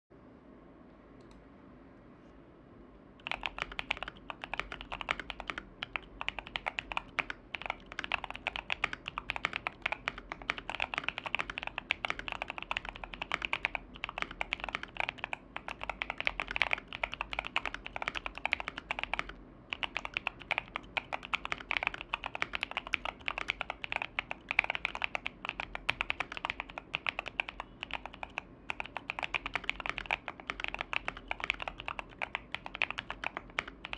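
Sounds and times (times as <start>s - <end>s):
mechanical keyboard typing: 3.2s - 33.9s.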